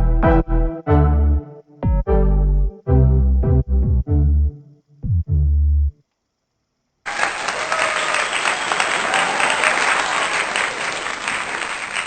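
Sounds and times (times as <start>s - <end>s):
crowd applause: 7.1s - 12.0s.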